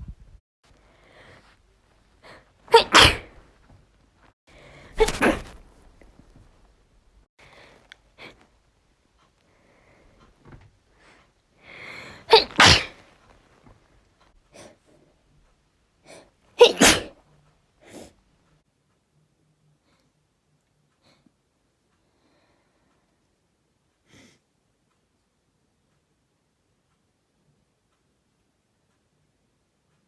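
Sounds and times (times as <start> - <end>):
woman sneezing: 2.7 - 3.4, 5.0 - 5.6, 12.2 - 13.0, 16.6 - 17.2.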